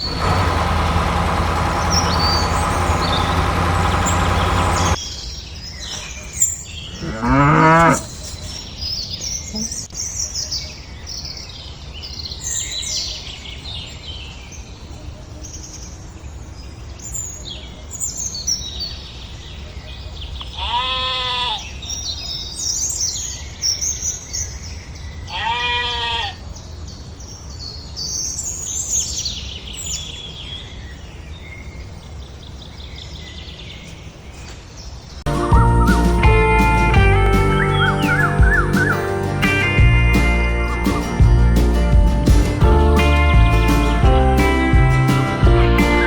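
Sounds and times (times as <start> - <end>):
birds chirping: 0.0 - 13.2, 27.6 - 46.0
animal bleating: 20.6 - 21.6, 25.3 - 26.4.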